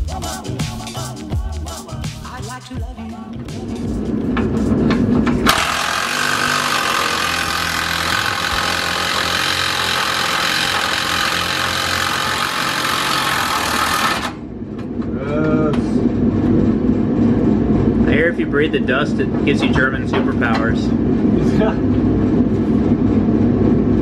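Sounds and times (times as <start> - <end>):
power tool whining: 5.4 - 14.5.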